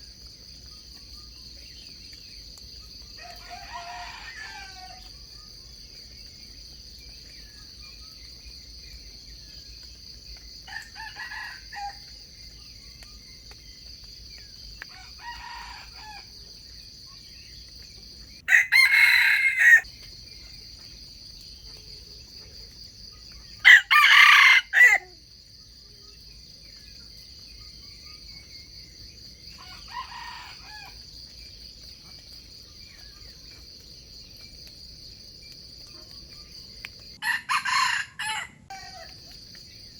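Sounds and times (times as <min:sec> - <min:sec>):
roosters crowing: 0:03.2 - 0:05.1, 0:10.7 - 0:12.0, 0:14.9 - 0:16.3, 0:18.5 - 0:19.8, 0:23.6 - 0:25.2, 0:29.6 - 0:31.0, 0:37.2 - 0:39.1.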